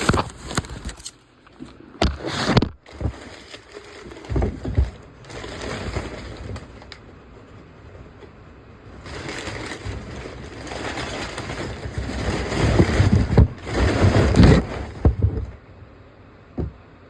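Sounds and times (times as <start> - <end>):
packaging rustling and crinkling: 0.0 - 7.6, 9.0 - 15.4
handling knocks and bumps: 2.0 - 7.0, 9.1 - 15.7, 16.5 - 16.9.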